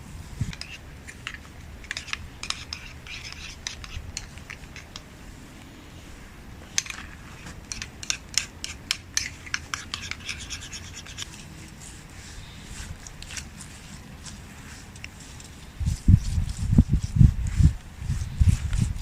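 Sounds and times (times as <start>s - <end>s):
irregular scraping: 0.4s - 5.1s, 6.6s - 19.0s
sharp clicking strokes: 0.5s - 5.1s, 6.8s - 19.0s.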